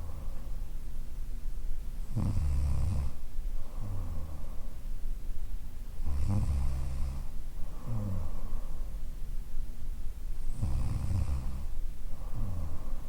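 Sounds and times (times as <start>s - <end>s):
soft breathing: 0.0s - 0.9s, 3.0s - 5.2s, 6.0s - 13.0s
woman snoring: 2.1s - 3.2s, 6.1s - 8.4s, 10.5s - 12.9s.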